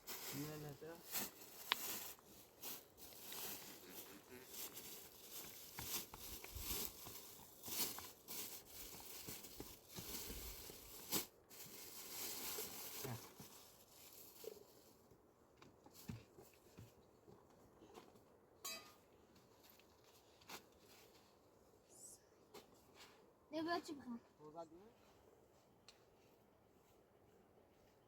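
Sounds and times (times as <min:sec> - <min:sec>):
rustling and crinkling handling: 0:00.0 - 0:18.3, 0:19.3 - 0:21.6.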